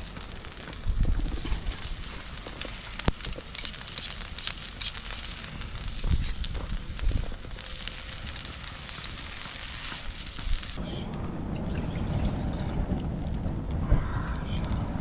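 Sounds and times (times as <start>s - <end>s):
campfire crackling and popping: 0.0s - 15.0s.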